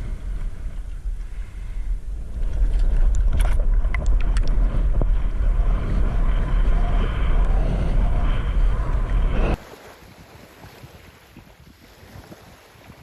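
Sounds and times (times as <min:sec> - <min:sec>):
water noise: 0:00.0 - 0:13.0
wind buffeting microphone: 0:00.0 - 0:13.0.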